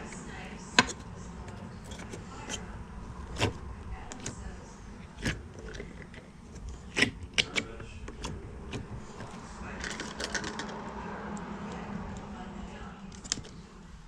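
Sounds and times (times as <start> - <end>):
plastic pieces clicking: 5.1 - 10.8.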